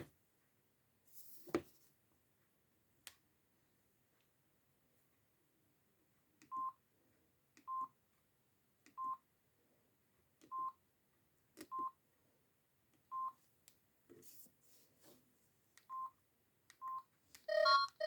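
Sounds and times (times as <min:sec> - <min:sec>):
phone keypad beeps: 0:16.8 - 0:18.0.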